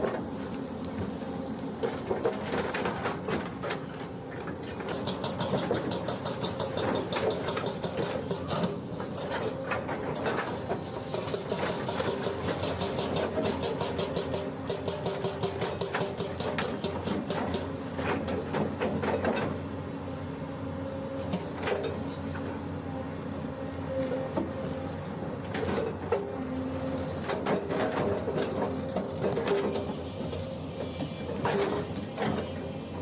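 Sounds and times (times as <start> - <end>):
diesel engine running: 0.0 - 33.0.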